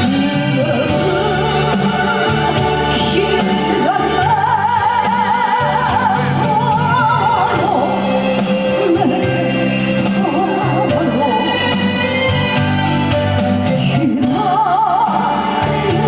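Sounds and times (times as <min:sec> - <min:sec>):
trot music with vibrato melody: 0:00.0 - 0:16.0.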